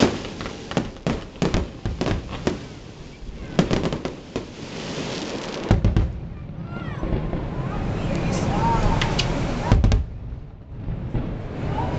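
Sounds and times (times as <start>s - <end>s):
firework shells bursting: 0.0s - 6.2s.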